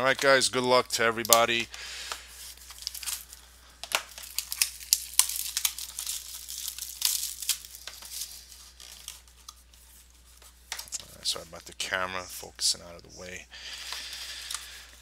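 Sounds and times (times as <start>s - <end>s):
plastic wrapping crinkling and tearing: 1.2s - 11.8s.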